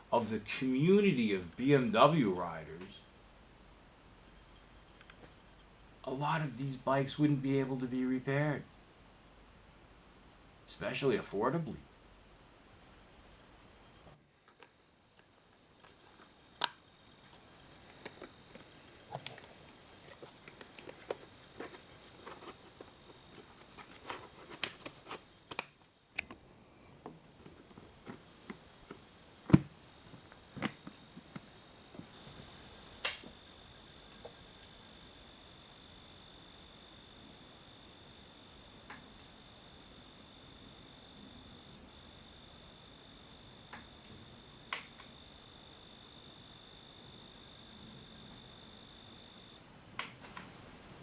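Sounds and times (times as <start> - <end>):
insects trilling: 13.8 - 51.0
pulsing insect chirp: 13.8 - 51.0.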